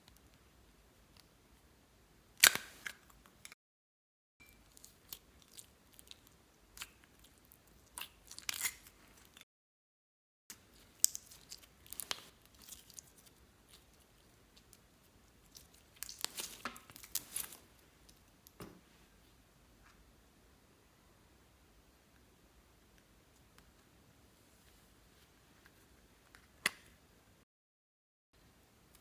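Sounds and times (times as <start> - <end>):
slime crackling and popping: 10.8 - 13.8, 15.4 - 17.6.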